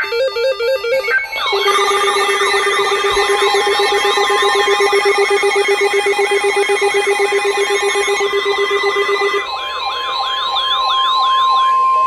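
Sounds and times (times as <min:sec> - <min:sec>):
steady high alert tone: 0:01.0 - 0:09.6
warbling siren-like alert tone: 0:01.0 - 0:11.6
fast-pulsing low beep: 0:01.4 - 0:09.5.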